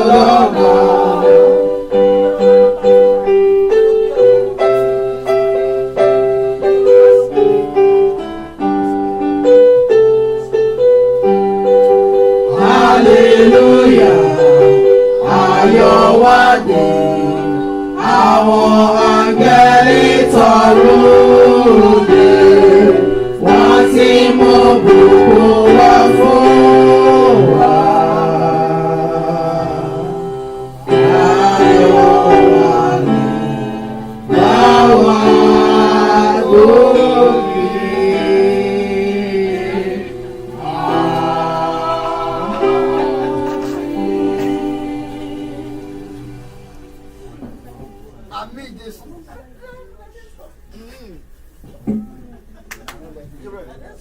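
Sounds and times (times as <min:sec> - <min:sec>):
choir singing: 0:00.0 - 0:04.4, 0:11.6 - 0:47.4
keyboard melody: 0:00.0 - 0:48.4.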